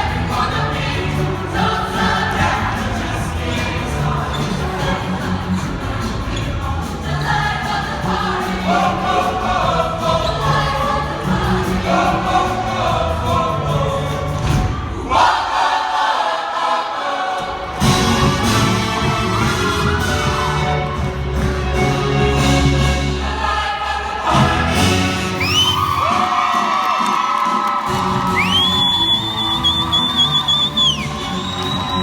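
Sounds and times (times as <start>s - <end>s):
group of voices singing: 0.0s - 26.7s
band playing: 17.8s - 23.6s, 24.3s - 27.0s.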